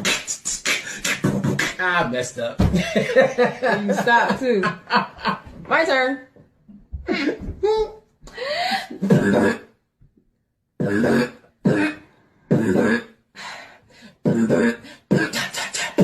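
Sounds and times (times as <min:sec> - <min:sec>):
human beatboxing: 0:00.0 - 0:02.4, 0:08.9 - 0:09.7, 0:10.8 - 0:13.1, 0:14.2 - 0:16.0.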